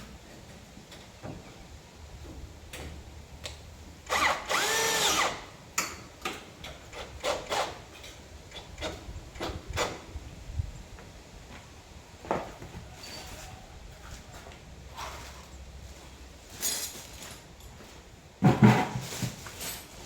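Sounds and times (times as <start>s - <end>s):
power drill whining: 4.0s - 5.6s.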